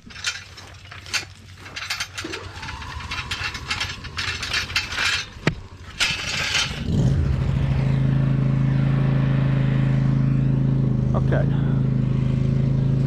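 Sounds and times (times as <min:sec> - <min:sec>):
mechanical rattling and clicking: 0:00.0 - 0:07.6
riding lawnmower engine: 0:00.0 - 0:13.0.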